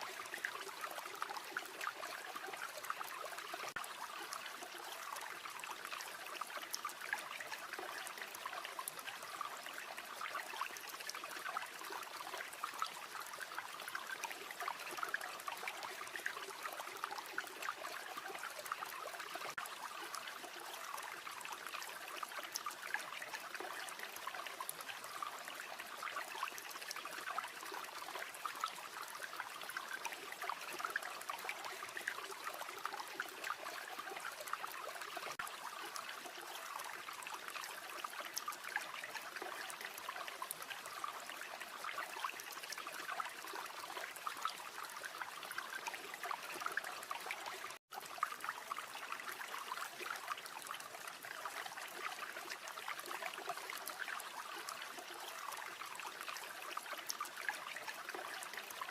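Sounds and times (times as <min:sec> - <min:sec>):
river water flowing: 0:00.0 - 0:58.9.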